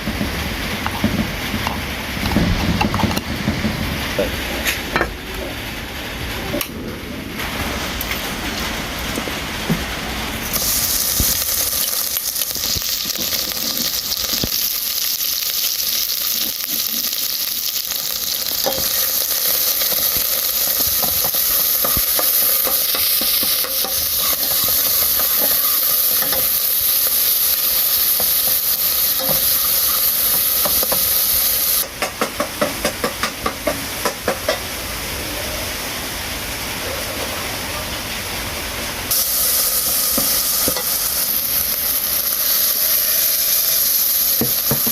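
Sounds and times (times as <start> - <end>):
food sizzling in hot oil: 10.2 - 35.1, 39.1 - 44.9.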